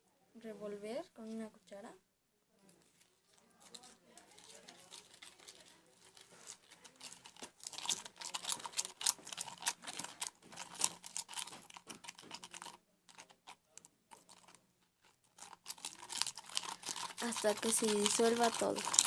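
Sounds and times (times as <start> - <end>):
spoon stirring in a cup: 3.6 - 14.6, 15.2 - 19.0.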